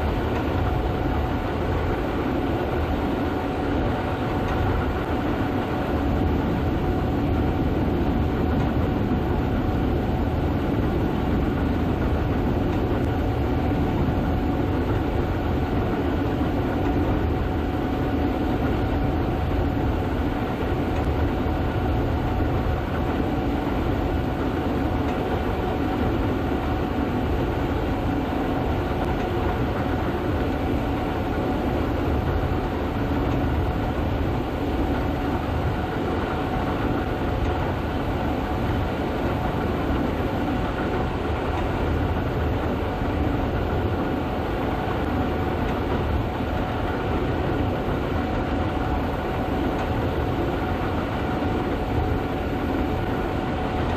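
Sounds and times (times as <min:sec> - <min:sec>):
combine harvester rumble: 0:00.0 - 0:53.9
steady machine whine: 0:00.0 - 0:53.9.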